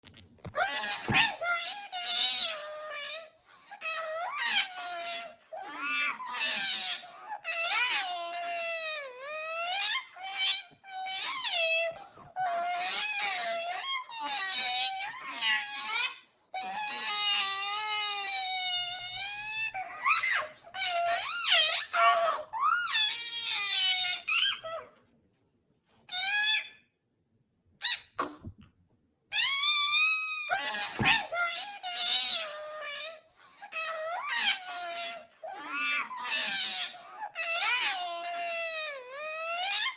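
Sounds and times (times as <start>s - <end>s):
high-pitched voice wailing: 0.5s - 3.3s, 29.4s - 39.9s.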